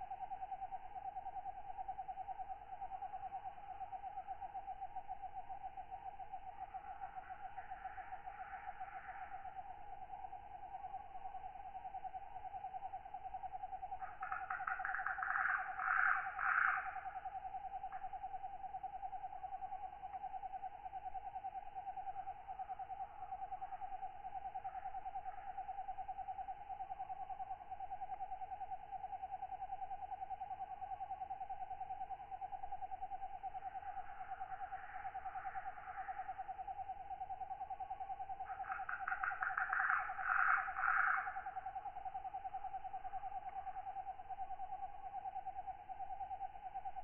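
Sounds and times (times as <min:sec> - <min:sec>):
insects trilling: 0:00.0 - 0:47.0
raspy katydid call: 0:14.0 - 0:17.3, 0:38.4 - 0:43.8.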